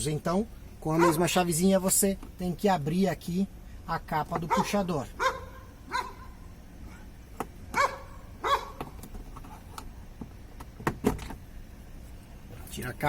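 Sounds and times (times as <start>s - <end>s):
dog barking: 0.9s - 1.3s, 4.5s - 6.4s, 7.7s - 8.8s.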